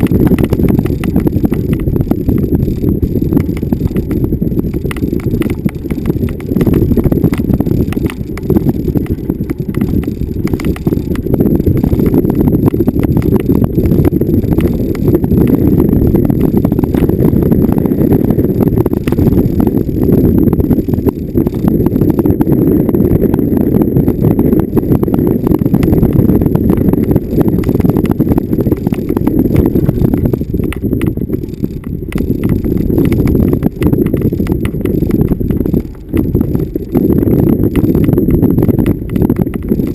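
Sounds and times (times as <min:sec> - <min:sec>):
rattles and knocks: 0:00.0 - 0:22.2, 0:25.4 - 0:39.9
vehicle rumbling off-road: 0:00.0 - 0:39.9.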